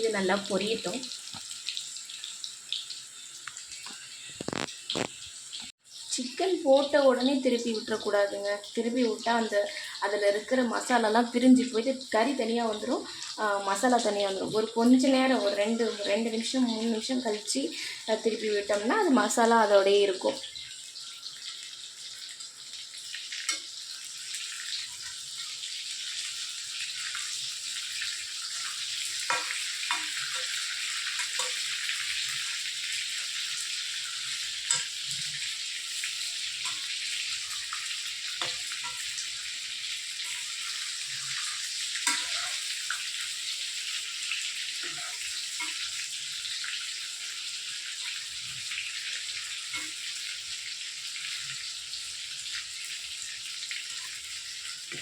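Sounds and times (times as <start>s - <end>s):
chicken frying in hot oil: 0.0s - 55.0s
oil popping and crackling: 0.6s - 5.7s, 26.2s - 51.7s.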